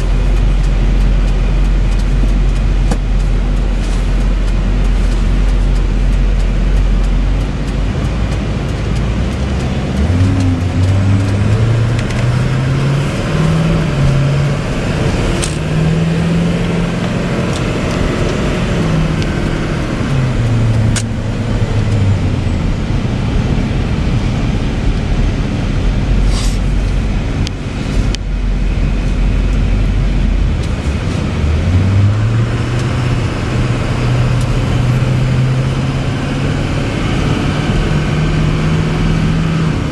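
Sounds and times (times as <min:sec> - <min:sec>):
sharp clicks: 0:00.0 - 0:12.6
diesel truck engine: 0:00.0 - 0:39.9
road noise: 0:00.0 - 0:39.9.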